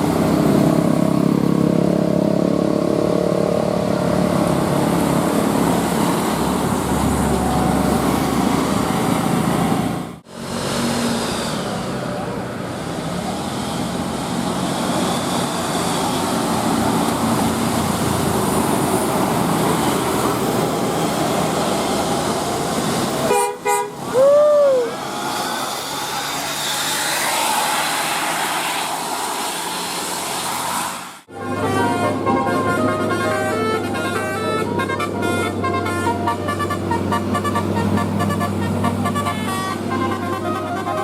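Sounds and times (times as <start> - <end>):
busy street traffic: 0.0 - 41.0
musical bus horn: 23.2 - 24.1, 31.3 - 41.0.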